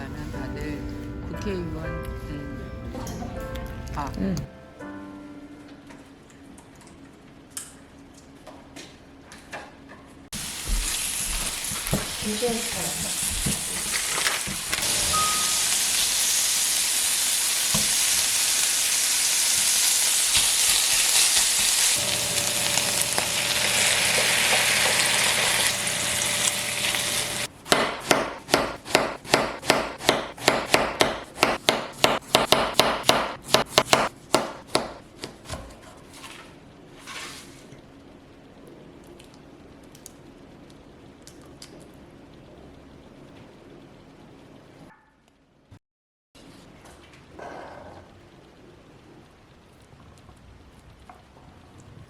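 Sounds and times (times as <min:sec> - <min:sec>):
food sizzling in a frying pan: 0:10.3 - 0:27.5.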